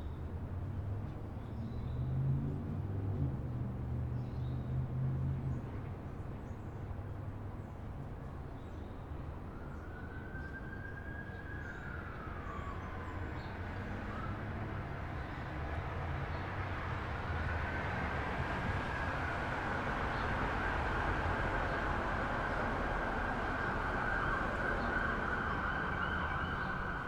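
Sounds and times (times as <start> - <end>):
distant siren wailing: 9.4 - 27.0
low traffic rumble: 11.8 - 27.0.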